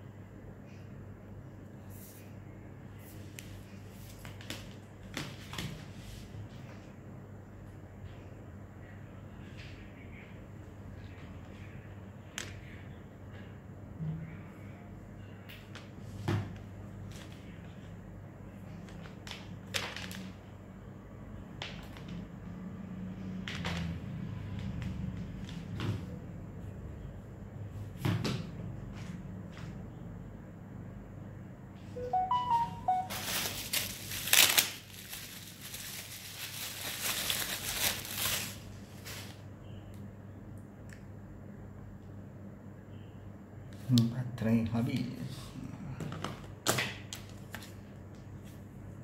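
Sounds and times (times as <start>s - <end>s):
low steady hum: 24.3s - 46.6s
packaging clicking and rustling: 33.1s - 39.3s.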